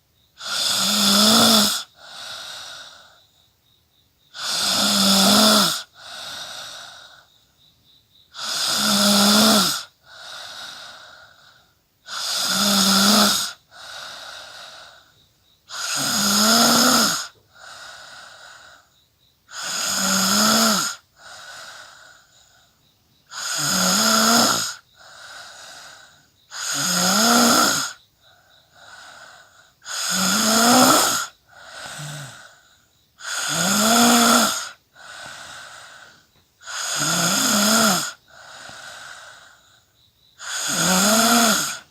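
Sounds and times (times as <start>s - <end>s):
person snoring: 0.4s - 3.2s, 4.3s - 7.3s, 8.3s - 18.9s, 19.5s - 39.8s, 40.4s - 41.9s
soft breath: 1.8s - 3.4s, 4.4s - 7.4s, 9.9s - 11.8s, 13.4s - 15.8s, 17.1s - 19.0s, 21.0s - 22.9s, 24.8s - 26.4s, 27.8s - 30.0s, 30.8s - 33.6s, 34.4s - 37.1s, 37.7s - 41.9s.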